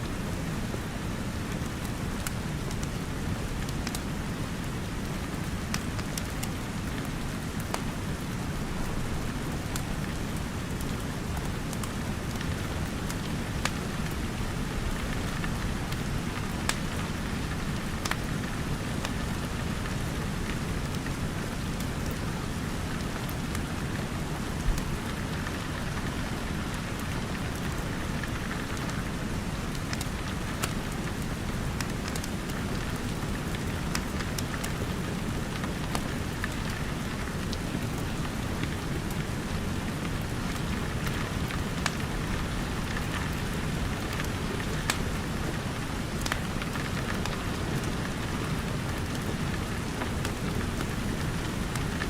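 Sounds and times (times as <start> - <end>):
crackling wood fire: 0.0 - 52.0
rain on roof and windows: 0.0 - 52.0.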